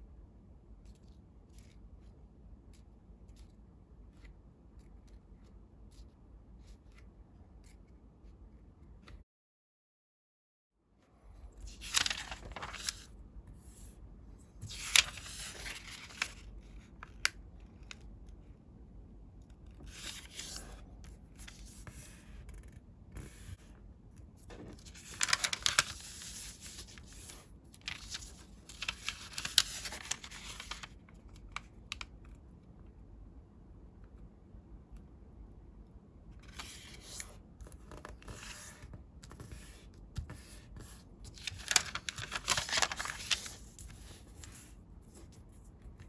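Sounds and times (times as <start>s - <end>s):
paper rustling while folded: 11.4s - 18.0s, 19.8s - 23.6s, 24.5s - 32.1s, 36.4s - 46.0s.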